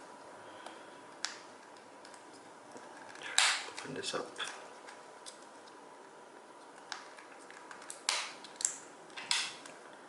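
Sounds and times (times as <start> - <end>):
sharp plastic snaps: 3.3 - 4.0, 6.8 - 9.8.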